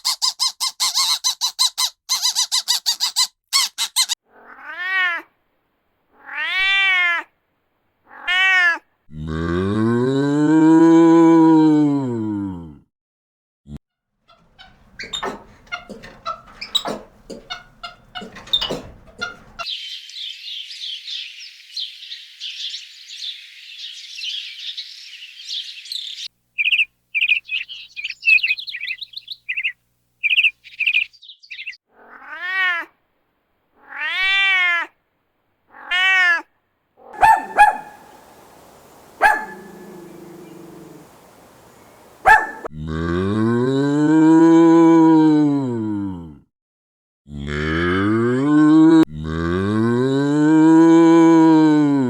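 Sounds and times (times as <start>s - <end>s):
cat meowing: 4.3s - 5.3s, 6.2s - 7.3s, 8.1s - 8.8s, 32.0s - 32.9s, 33.8s - 34.9s, 35.7s - 36.5s, 39.2s - 41.4s
cow mooing: 37.2s - 45.2s, 47.3s - 52.0s.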